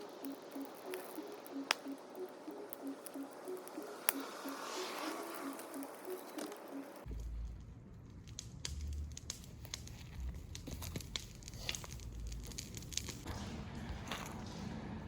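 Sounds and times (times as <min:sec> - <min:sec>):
crackles of dry leaves and twigs: 0:00.0 - 0:14.6
low rumble: 0:07.0 - 0:12.6.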